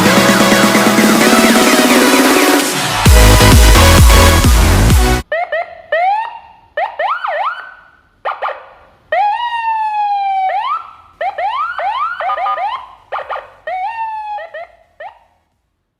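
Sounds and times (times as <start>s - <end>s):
electronic vehicle siren: 5.3s - 15.4s.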